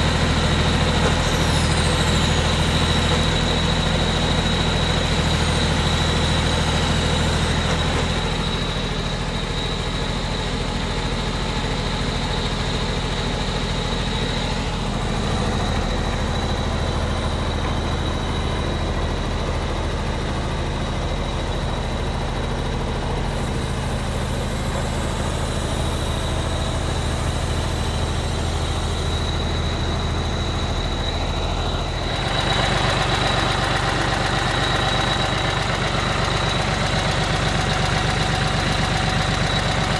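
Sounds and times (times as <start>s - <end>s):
diesel engine idling: 0.0s - 39.9s
high whine: 23.2s - 36.9s.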